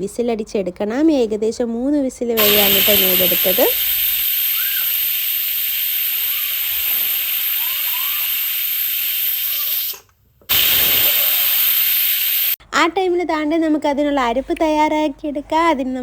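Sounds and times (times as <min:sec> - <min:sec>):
pressure cooker steam hissing: 0:02.4 - 0:12.6.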